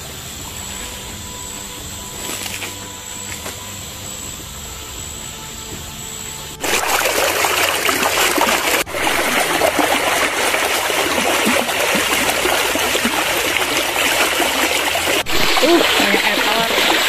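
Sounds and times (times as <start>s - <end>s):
spring water burbling: 6.5s - 17.0s.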